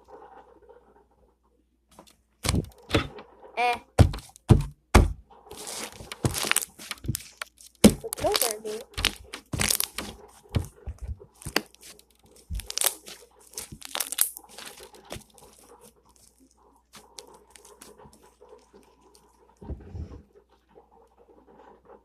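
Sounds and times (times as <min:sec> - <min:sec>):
slime crackling and popping: 0:02.4 - 0:02.8, 0:05.5 - 0:19.3.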